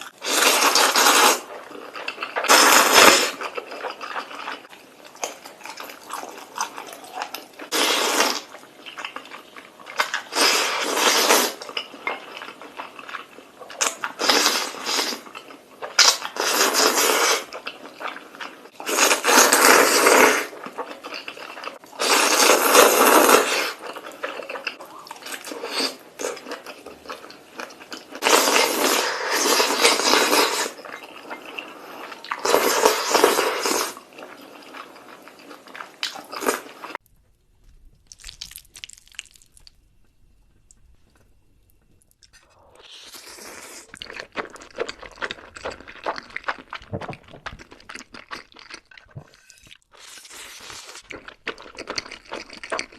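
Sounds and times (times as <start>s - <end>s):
person slurping noodles: 0.2s - 1.5s, 18.8s - 20.5s, 28.2s - 30.8s, 32.4s - 34.0s, 42.4s - 44.5s.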